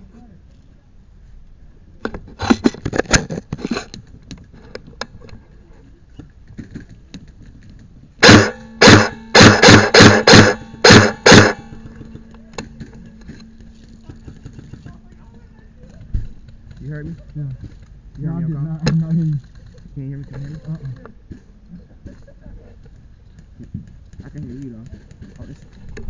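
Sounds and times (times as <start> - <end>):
airsoft rifle bursts: 8.2 - 13.4
motor hum: 8.2 - 21.3.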